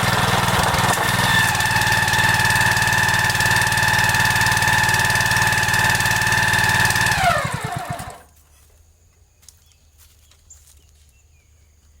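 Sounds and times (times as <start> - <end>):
small engine spinning down: 0.0 - 8.3.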